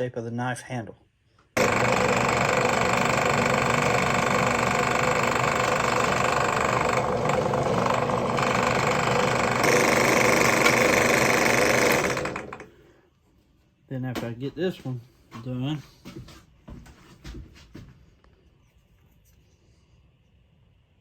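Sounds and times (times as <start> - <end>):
drill press motor drilling wood: 1.6 - 12.7.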